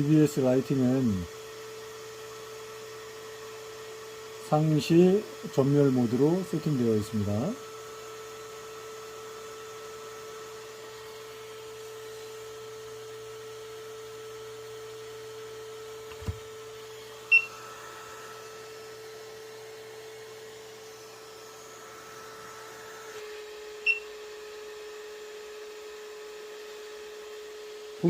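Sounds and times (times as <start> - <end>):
electrical hum: 9.1 - 25.6
soft knock: 16.1 - 16.4
short high beeps: 17.3 - 17.5, 23.9 - 24.1.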